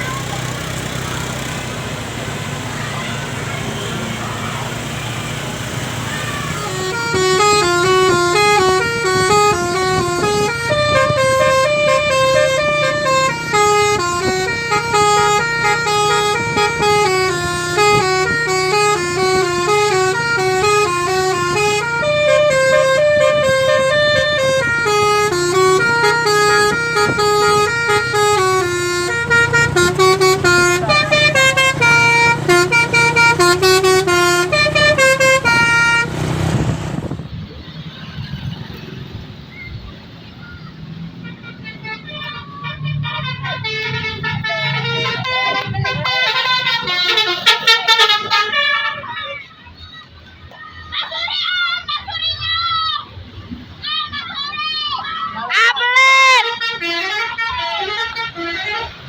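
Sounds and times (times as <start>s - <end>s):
bus horn playing melody: 0.0s - 37.2s, 41.2s - 49.4s, 55.5s - 59.0s
bus engine humming: 0.0s - 59.0s.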